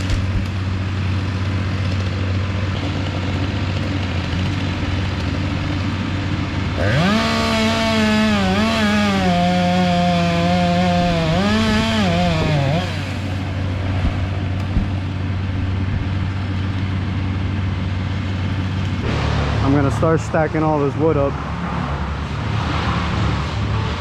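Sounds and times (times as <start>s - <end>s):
chainsaw at full throttle: 0.0s - 15.6s
low engine drone: 0.0s - 24.0s.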